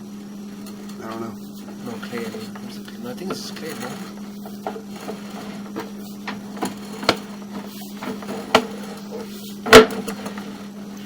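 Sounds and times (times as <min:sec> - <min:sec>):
low electrical hum: 0:00.0 - 0:11.0
clicks and knocks: 0:03.3 - 0:10.5.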